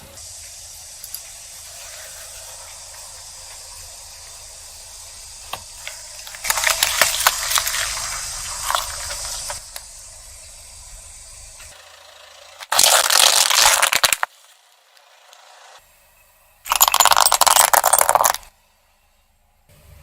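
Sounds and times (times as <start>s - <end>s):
steady hiss: 0.0s - 11.8s
objects crackling under car tyre: 5.7s - 9.9s, 12.6s - 15.5s.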